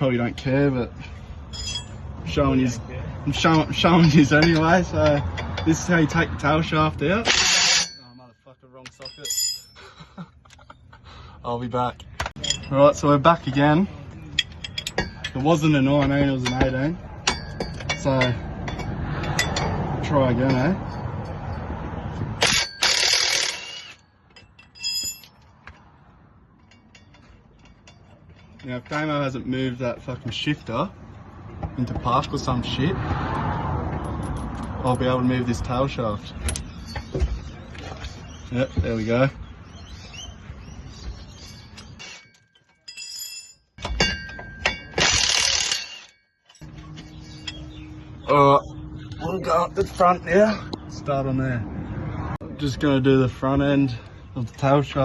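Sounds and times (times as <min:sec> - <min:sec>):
metal tools clinking: 0:00.3 - 0:02.1, 0:03.3 - 0:06.1, 0:07.2 - 0:10.0, 0:12.1 - 0:21.7, 0:22.4 - 0:30.8, 0:34.0 - 0:38.2, 0:41.3 - 0:48.2.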